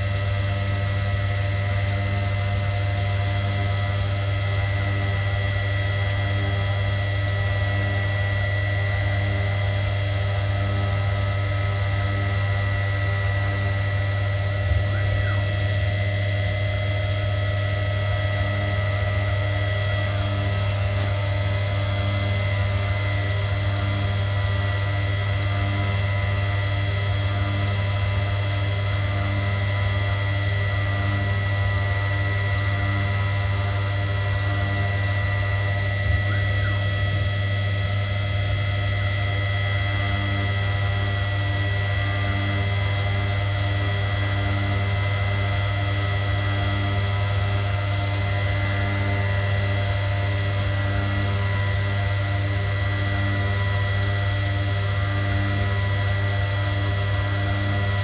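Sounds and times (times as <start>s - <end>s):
milling machine humming and whining: 0.0s - 58.0s
pulsing low tone: 14.2s - 16.6s, 35.4s - 37.5s.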